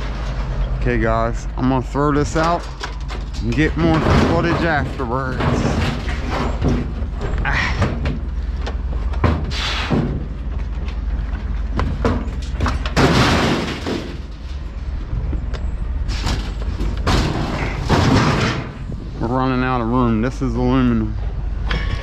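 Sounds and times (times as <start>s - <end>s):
scrap metal clanking and crashing: 0.0s - 8.6s, 11.8s - 14.9s, 16.0s - 19.6s
steady low rumble: 0.0s - 22.0s.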